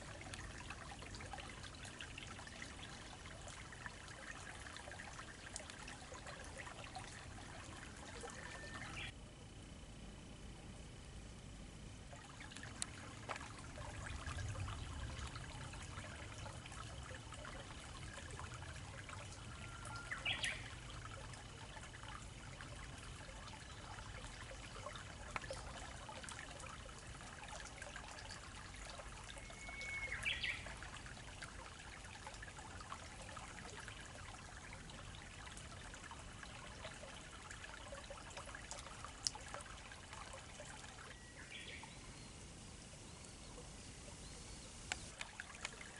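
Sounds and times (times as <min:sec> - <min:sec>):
river trickling: 0:00.0 - 0:09.2, 0:12.0 - 0:45.9
bird rising call: 0:08.2 - 0:09.1, 0:29.4 - 0:30.7.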